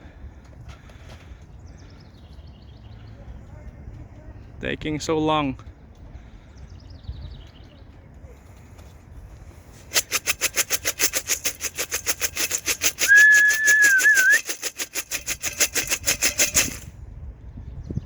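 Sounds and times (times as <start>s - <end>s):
rhythmic rattling: 9.8s - 16.9s
person whistling a held note: 13.0s - 14.4s.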